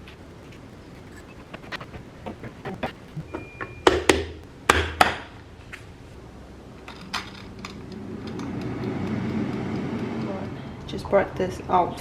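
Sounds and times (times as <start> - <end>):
short high beep: 3.2 - 4.0.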